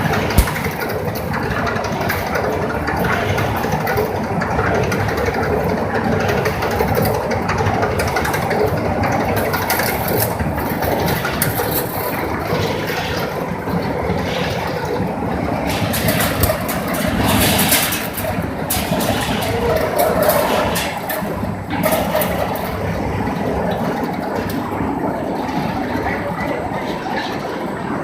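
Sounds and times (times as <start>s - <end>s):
sharp clicks and hisses: 0.3s - 1.0s.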